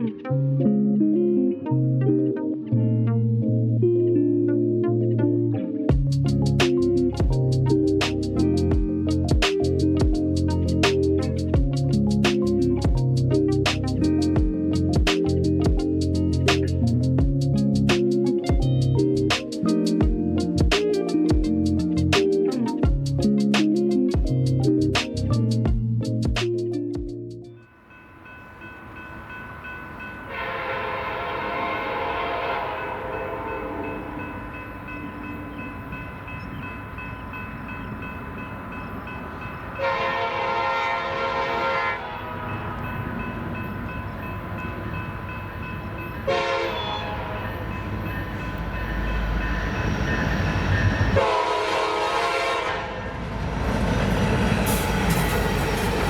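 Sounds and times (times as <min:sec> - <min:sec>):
locomotive air horn blasts: 0:30.3 - 0:34.3, 0:39.8 - 0:42.7, 0:46.3 - 0:47.6, 0:51.0 - 0:53.1
locomotive engine rumble: 0:42.3 - 0:56.0.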